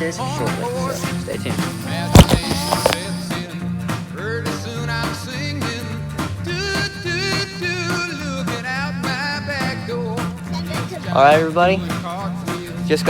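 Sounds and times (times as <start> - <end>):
song with vocals and beat: 0.0 - 13.0.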